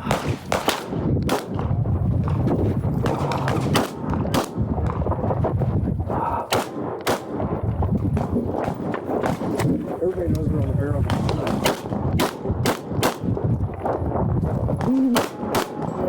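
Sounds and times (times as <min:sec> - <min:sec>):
pistol shots: 0:00.0 - 0:05.0, 0:06.5 - 0:07.6, 0:08.2 - 0:09.8, 0:11.0 - 0:13.5, 0:14.8 - 0:16.0
steady low rumble: 0:00.0 - 0:16.0.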